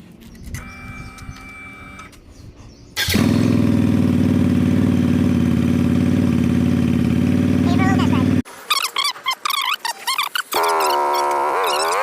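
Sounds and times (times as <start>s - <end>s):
motorcycle engine starting and idling: 3.0s - 8.4s.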